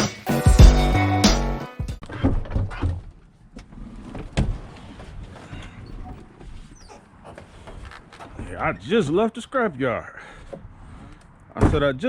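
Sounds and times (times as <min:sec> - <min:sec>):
vehicle rumbling: 0:02.7 - 0:11.9.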